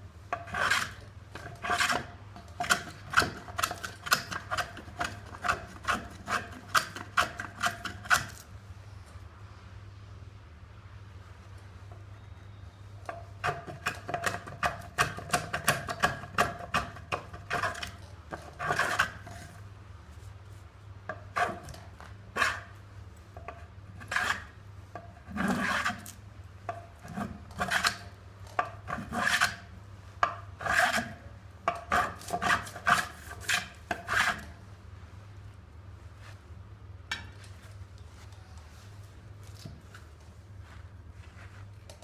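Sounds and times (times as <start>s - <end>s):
hand plane shaving wood: 0.5s - 8.4s, 13.4s - 19.4s, 25.3s - 26.1s, 28.9s - 29.6s, 30.6s - 31.2s, 31.9s - 34.5s.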